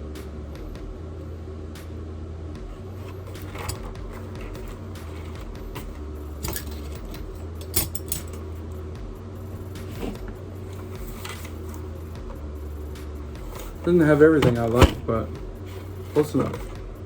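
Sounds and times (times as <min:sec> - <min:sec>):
low electrical hum: 0:00.0 - 0:17.0
metal tools clinking: 0:03.3 - 0:08.5.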